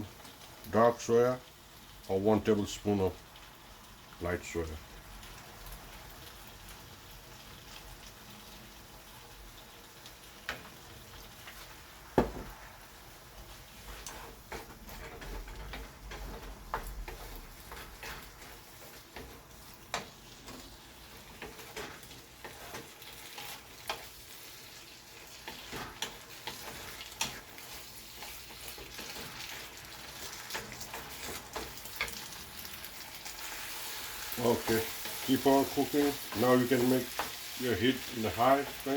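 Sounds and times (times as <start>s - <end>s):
food sizzling in frying pan: 0.0s - 38.9s
utensil knocking against pan: 12.2s - 12.5s.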